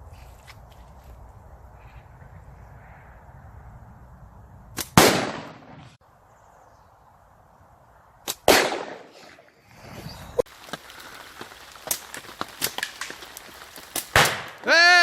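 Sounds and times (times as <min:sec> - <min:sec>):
exploding target bangs: 0:04.9 - 0:06.0.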